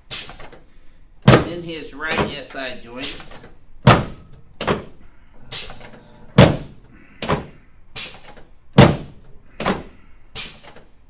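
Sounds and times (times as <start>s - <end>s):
heavy thuds of adjusting table: 3.8s - 7.6s, 8.8s - 9.9s.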